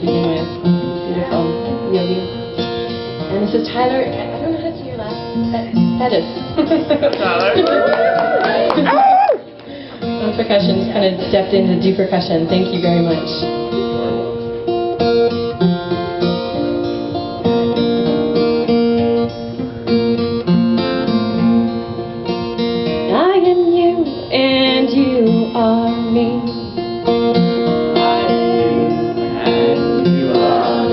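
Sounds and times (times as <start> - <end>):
strummed acoustic guitar: 0.0 - 7.6, 9.4 - 30.9
sliding melody line: 27.6 - 30.9.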